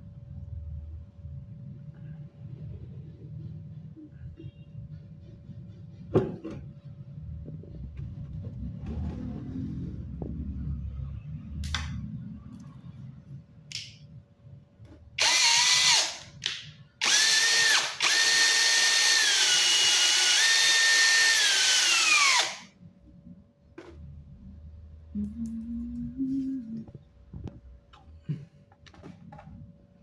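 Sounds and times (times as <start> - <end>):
electric drill drilling into plastic: 15.2 - 16.3, 17.0 - 22.6.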